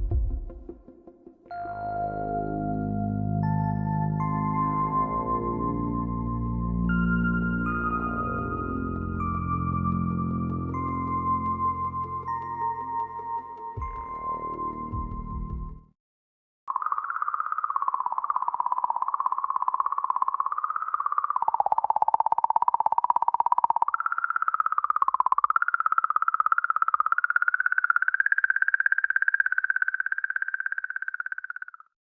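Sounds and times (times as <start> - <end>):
buzzing wavering electronic tone: 2.1 - 13.3, 16.7 - 31.9.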